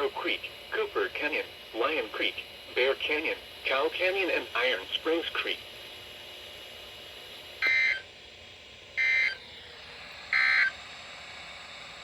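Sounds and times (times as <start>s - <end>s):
receiver hiss: 0.0s - 5.7s.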